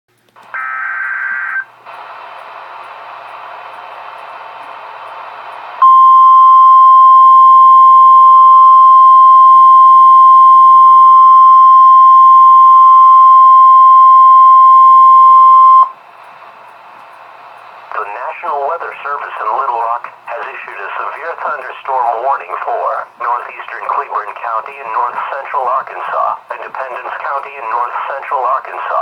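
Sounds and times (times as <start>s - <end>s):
radio hiss: 0.4s - 5.8s, 17.8s - 29.0s
loud steady alert tone: 0.5s - 1.9s.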